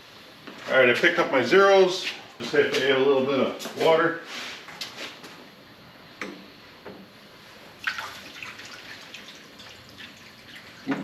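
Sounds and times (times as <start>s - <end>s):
water splashing and dripping: 7.8s - 11.0s.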